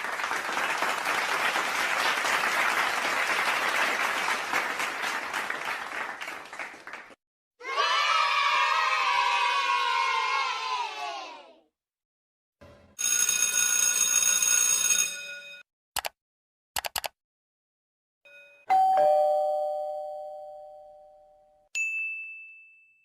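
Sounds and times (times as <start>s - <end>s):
sharp clicks: 16.0s - 16.2s, 16.8s - 17.2s
bright ringing chime: 18.3s - 23.0s
two-note doorbell chime: 18.3s - 23.0s.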